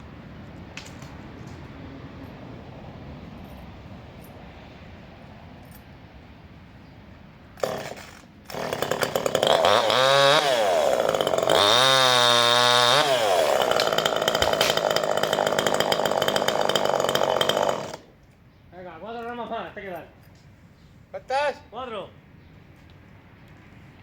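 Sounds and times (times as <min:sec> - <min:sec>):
chainsaw revving and cutting: 0:07.6 - 0:18.1.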